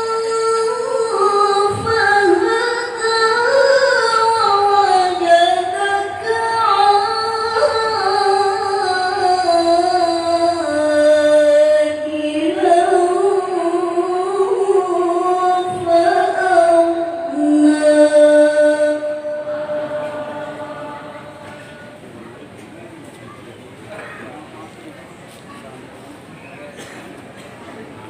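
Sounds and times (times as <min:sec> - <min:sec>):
melodic quran recitation: 0:00.0 - 0:22.0.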